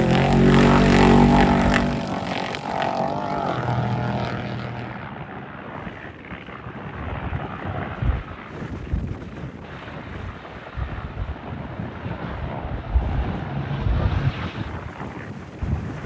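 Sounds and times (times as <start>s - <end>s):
high-revving engine passing: 0.0s - 5.8s, 12.6s - 15.0s
wind rumble on microphone: 0.0s - 16.0s.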